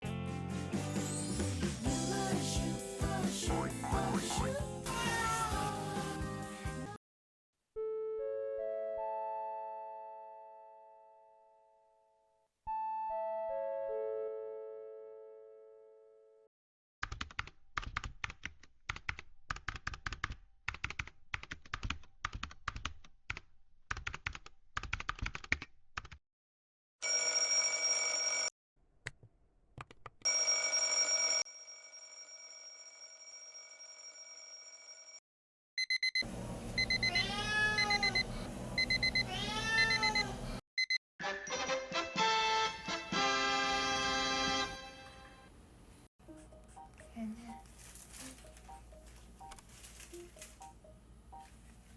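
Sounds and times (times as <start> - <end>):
electronic alarm clock beeping: 35.8 - 41.0.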